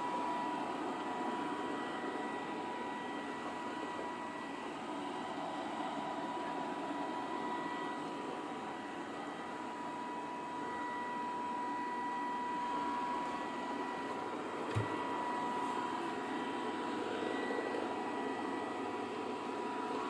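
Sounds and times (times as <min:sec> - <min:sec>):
robotic vacuum cleaner whirring: 0:08.9 - 0:20.0
soft knock: 0:14.7 - 0:15.0.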